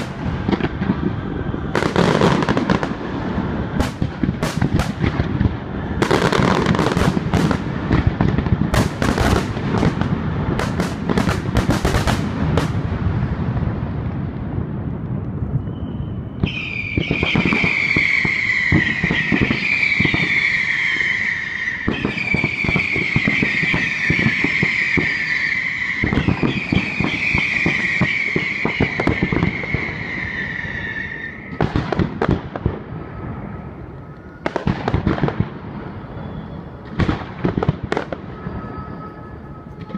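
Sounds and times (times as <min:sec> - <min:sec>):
fireworks bangs and crackling: 0:00.0 - 0:39.9
fireworks pops: 0:03.8 - 0:12.8, 0:14.1 - 0:20.6
shrill falling whistle: 0:15.5 - 0:31.6, 0:35.8 - 0:36.8, 0:38.2 - 0:39.9.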